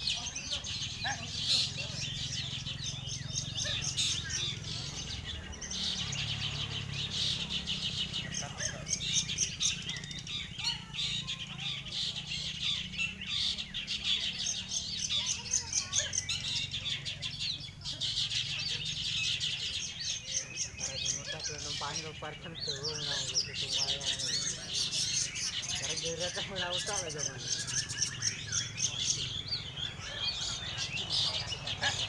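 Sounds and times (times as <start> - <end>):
birds chattering and chirping: 0.0 - 32.0.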